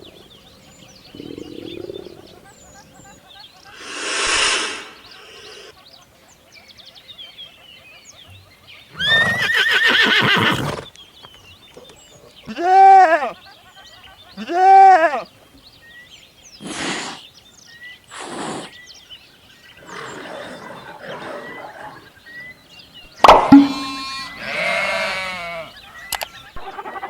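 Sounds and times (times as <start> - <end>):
short breathy blasts: 3.8 - 5.4
animal calls: 8.3 - 11.0, 23.5 - 27.0.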